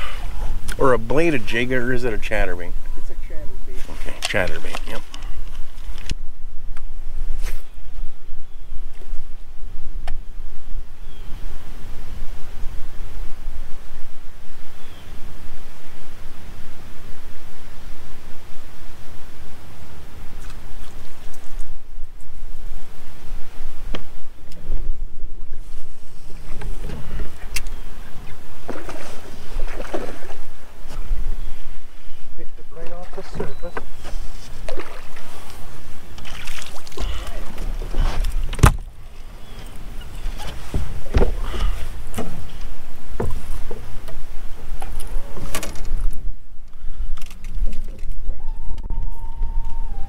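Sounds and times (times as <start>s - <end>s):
wind buffeting microphone: 0.0s - 50.0s
waves slapping boat hull: 25.5s - 46.4s
sharp knocks or splashes: 36.2s - 37.8s.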